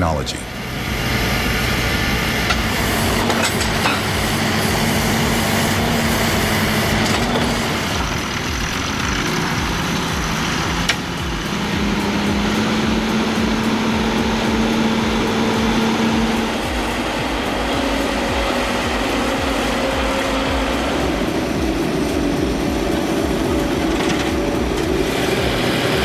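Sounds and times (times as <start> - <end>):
heavy vehicle engine running: 0.0 - 26.0.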